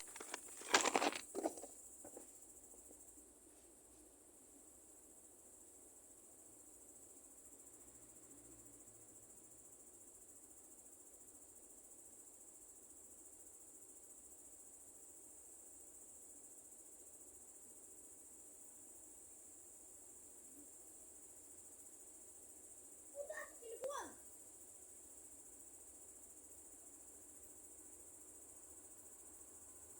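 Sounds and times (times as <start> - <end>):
faint high-pitched hiss: 0.0 - 29.9.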